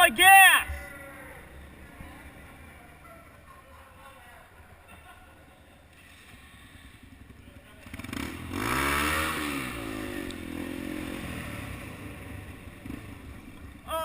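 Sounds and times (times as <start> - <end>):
dirt bike engine revving: 6.0 - 14.0.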